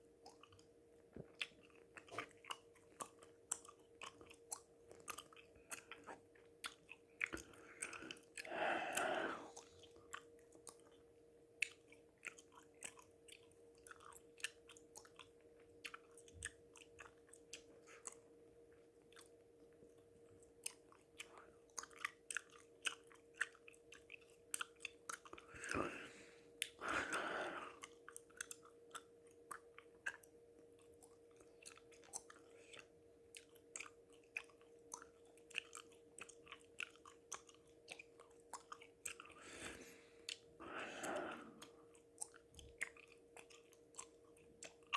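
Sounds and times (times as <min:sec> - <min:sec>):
faint steady hum: 0:00.0 - 0:44.9
gum chewing mouth clicks: 0:00.2 - 0:11.0, 0:11.6 - 0:18.3, 0:19.1 - 0:44.9
heavy breaths: 0:07.4 - 0:09.9, 0:25.5 - 0:27.8, 0:39.3 - 0:41.6.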